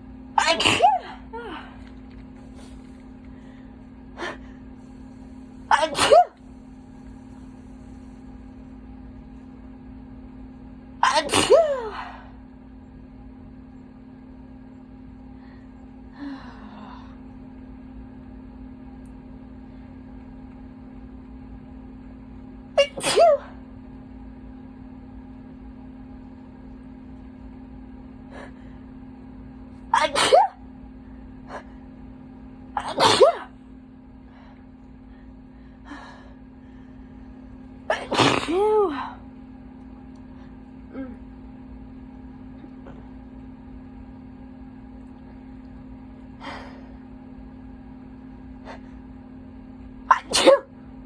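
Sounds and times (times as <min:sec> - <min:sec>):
low hum: 0:00.0 - 0:51.0
person sneezing: 0:00.4 - 0:01.8, 0:05.7 - 0:06.4, 0:11.0 - 0:12.3, 0:22.8 - 0:23.6, 0:29.9 - 0:30.6, 0:32.8 - 0:33.6, 0:37.9 - 0:39.2, 0:50.1 - 0:50.7.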